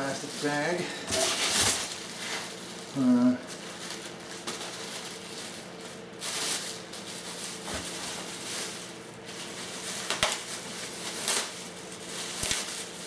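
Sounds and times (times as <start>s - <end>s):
plastic bag rustling: 0.0s - 13.0s.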